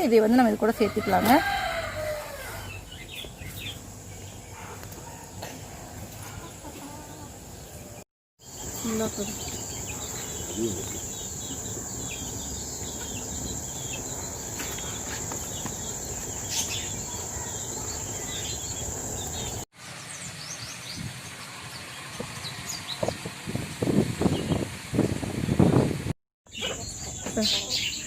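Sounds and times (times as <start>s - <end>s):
bird chirps: 7.6s - 23.1s.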